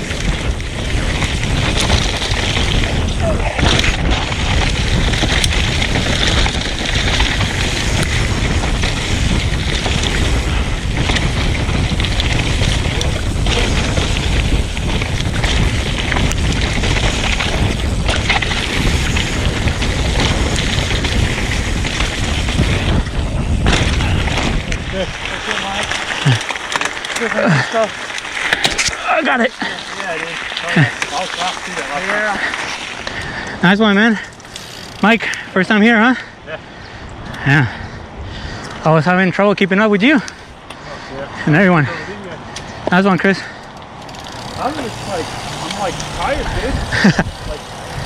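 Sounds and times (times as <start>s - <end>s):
bike knocks and rattles: 0.0s - 33.4s
bike tyre roar: 0.0s - 39.0s, 39.6s - 48.0s
wind rushing over microphone: 0.0s - 48.0s.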